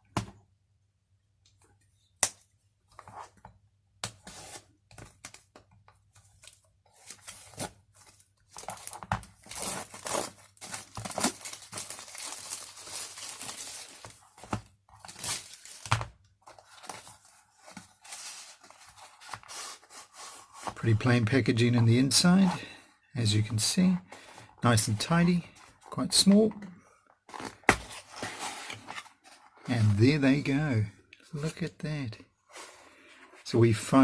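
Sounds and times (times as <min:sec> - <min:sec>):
tearing and crinkling packaging: 0:08.5 - 0:14.4.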